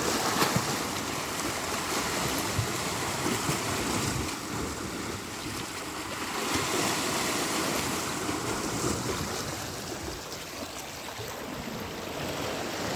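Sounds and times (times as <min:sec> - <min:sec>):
waves breaking on beach: 0:00.0 - 0:12.9.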